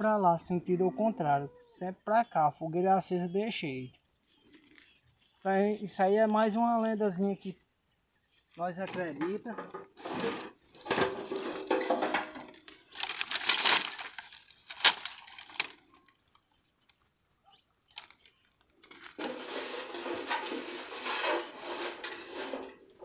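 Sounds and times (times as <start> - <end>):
crickets chirping: 0.0 - 23.0
branches rustling and scraping: 8.4 - 16.4, 17.8 - 23.0
wood knocking: 8.8 - 15.8.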